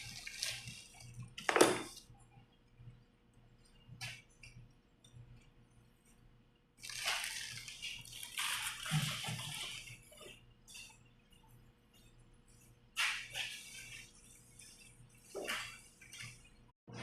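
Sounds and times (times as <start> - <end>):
plastic bag rustling: 6.8 - 10.8.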